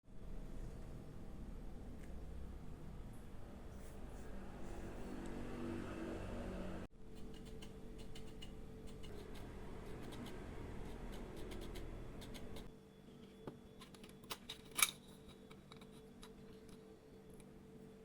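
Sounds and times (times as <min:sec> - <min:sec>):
low steady hum: 0:00.1 - 0:18.0.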